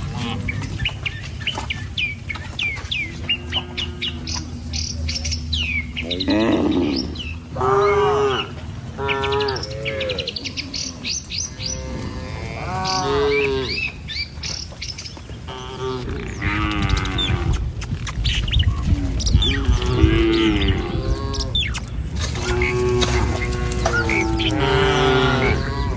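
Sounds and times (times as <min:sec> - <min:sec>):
cattle mooing: 0:00.0 - 0:01.2, 0:03.2 - 0:04.5, 0:06.0 - 0:13.9, 0:15.5 - 0:17.6, 0:19.0 - 0:25.9
small birds chirping: 0:00.0 - 0:25.9.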